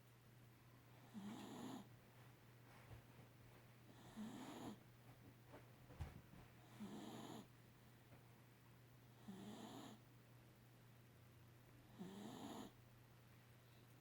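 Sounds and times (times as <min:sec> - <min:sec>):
faint slow snoring: 0:01.1 - 0:01.9, 0:04.0 - 0:04.8, 0:06.7 - 0:07.5, 0:09.2 - 0:10.0, 0:12.0 - 0:12.8.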